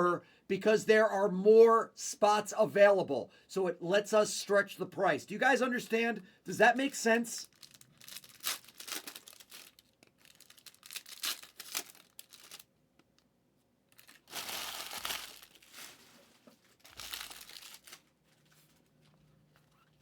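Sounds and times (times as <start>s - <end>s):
wrapper ripping: 7.4s - 12.7s, 13.9s - 18.7s
wrapper crinkling: 7.4s - 13.2s, 13.9s - 20.0s.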